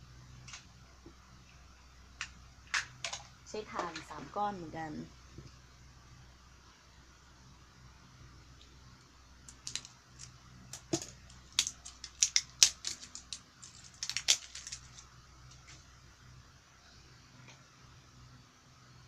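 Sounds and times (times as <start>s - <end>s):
plastic toy clicking and rattling: 9.5s - 15.0s.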